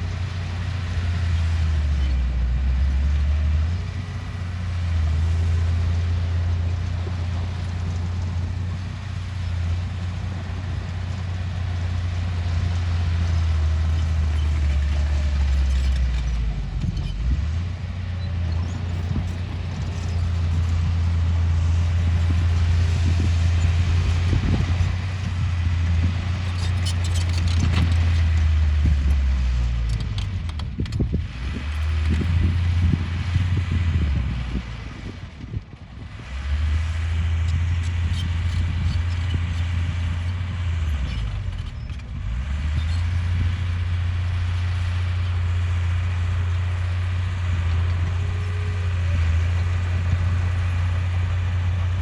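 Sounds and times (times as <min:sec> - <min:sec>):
diesel engine droning: 0:00.0 - 0:52.0
rattling and clicking: 0:26.5 - 0:28.5.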